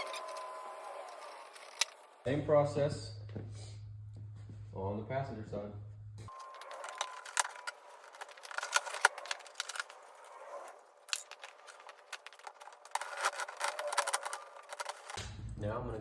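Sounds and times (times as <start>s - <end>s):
tools handled: 6.3s - 10.1s, 11.0s - 15.2s.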